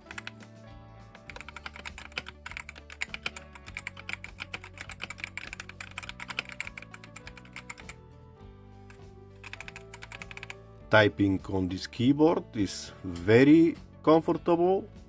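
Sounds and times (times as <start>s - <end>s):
mechanical keyboard typing: 0.0s - 0.4s, 1.3s - 8.0s, 9.4s - 10.6s
quiet background music: 0.0s - 15.0s.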